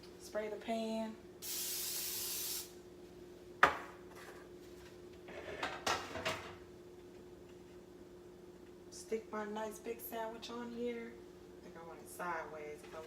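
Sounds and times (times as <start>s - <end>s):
cooking oil spray hissing: 1.4s - 2.8s.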